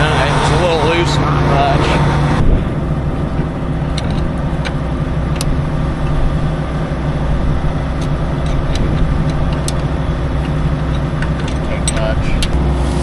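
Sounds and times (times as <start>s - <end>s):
large diesel engine idling: 0.0s - 13.0s.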